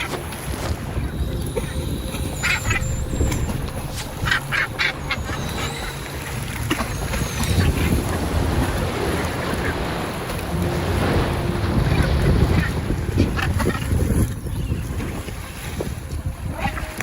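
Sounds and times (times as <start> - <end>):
sea noise: 0.0 - 17.0
wind: 0.0 - 17.0.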